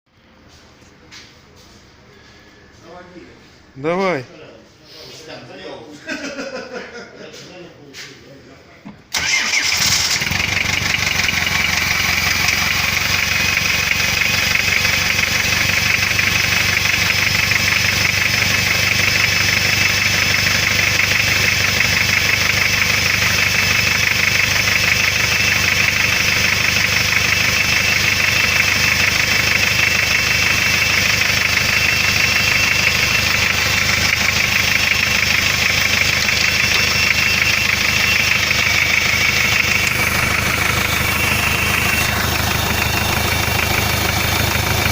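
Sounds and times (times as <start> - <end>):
diesel engine idling with a knock: 10.4 - 44.9.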